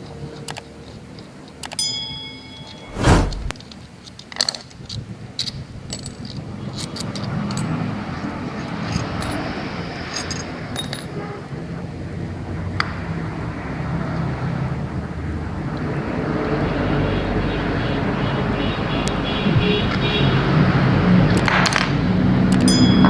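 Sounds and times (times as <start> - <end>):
rough scraping: 2.9 - 3.6.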